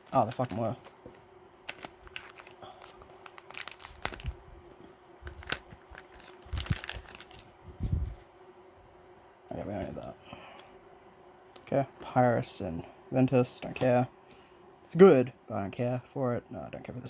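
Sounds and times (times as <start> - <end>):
packaging crinkling and rustling: 0.0 - 8.2.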